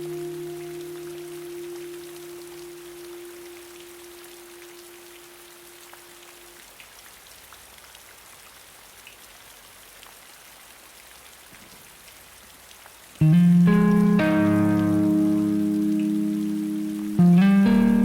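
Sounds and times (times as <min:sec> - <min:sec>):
loud guitar chord: 0:00.0 - 0:03.5, 0:13.2 - 0:18.0
held guitar note: 0:00.0 - 0:05.3, 0:13.2 - 0:18.0
steady rain: 0:00.0 - 0:18.0.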